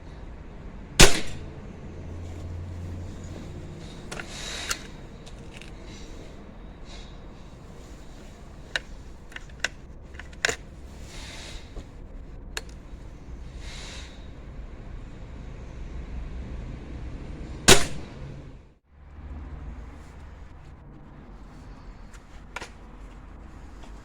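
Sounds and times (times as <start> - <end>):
air rifle shot: 1.0 - 1.4, 17.7 - 18.2.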